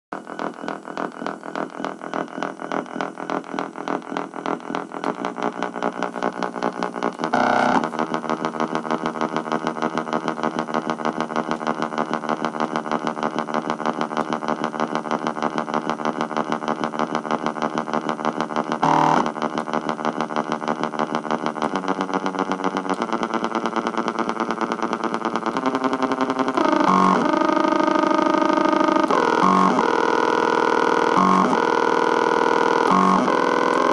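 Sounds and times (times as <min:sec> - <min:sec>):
stepper motor electronic pulsing: 0:00.1 - 0:33.9.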